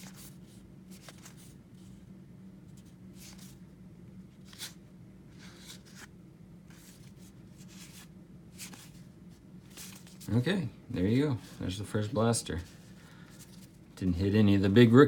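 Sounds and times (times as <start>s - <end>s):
low steady hum: 0.0s - 15.0s
cards sliding past each other: 4.4s - 9.1s.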